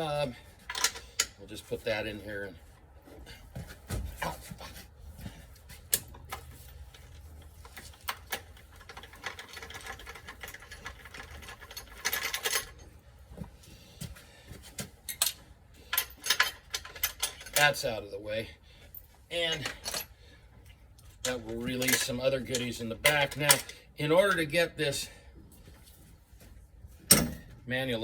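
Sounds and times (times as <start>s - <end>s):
metal clicks and scrapes: 5.9s - 12.8s.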